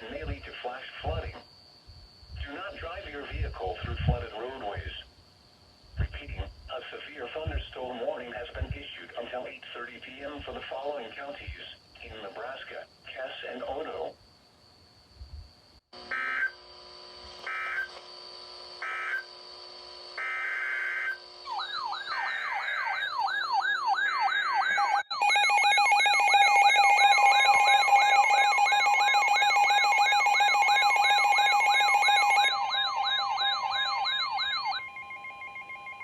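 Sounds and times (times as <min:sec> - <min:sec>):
warbling siren: 0:17.4 - 0:18.0, 0:18.8 - 0:19.3, 0:20.2 - 0:36.0
digital data tone bursts: 0:24.7 - 0:35.0
two-tone attention signal: 0:25.1 - 0:34.9.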